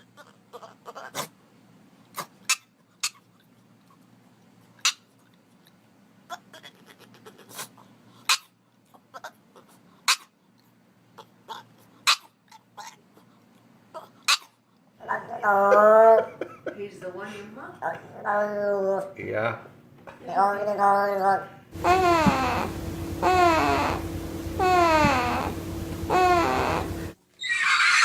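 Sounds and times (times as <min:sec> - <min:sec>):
faint low hum: 0:21.8 - 0:27.2
animal making sharp noises: 0:21.8 - 0:28.0.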